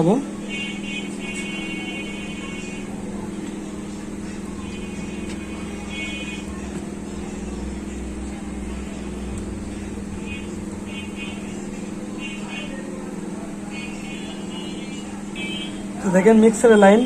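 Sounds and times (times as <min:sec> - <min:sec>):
faint distant voices: 0:00.0 - 0:17.0
steady low hum: 0:00.0 - 0:17.0
deep traffic rumble: 0:01.2 - 0:16.7.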